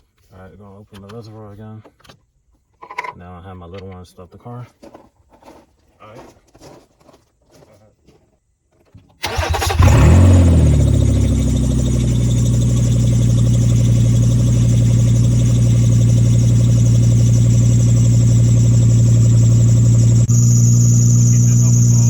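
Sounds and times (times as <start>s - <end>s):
car engine cranking and idling: 9.2s - 22.0s.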